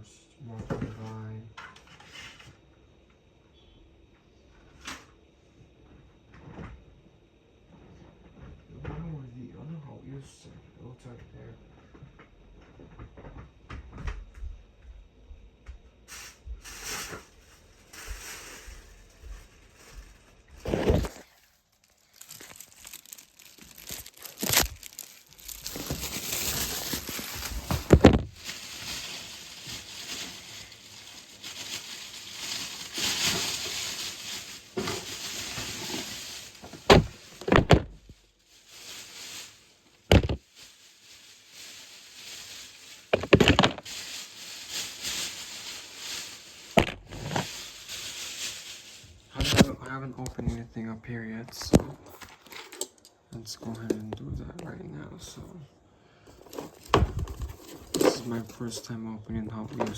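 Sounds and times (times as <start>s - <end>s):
rustling and crinkling: 15.7s - 50.7s, 51.4s - 54.9s, 56.3s - 59.9s.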